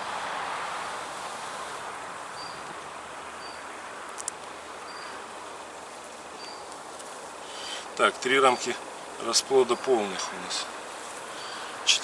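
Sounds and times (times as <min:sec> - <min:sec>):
honeybees buzzing: 0:00.0 - 0:12.0
small click: 0:04.1 - 0:04.4.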